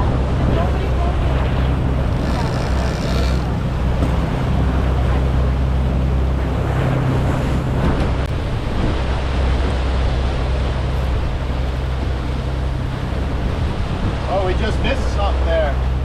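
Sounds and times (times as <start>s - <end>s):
water rushing along hull: 0.0s - 16.0s
boat engine droning: 0.2s - 7.8s.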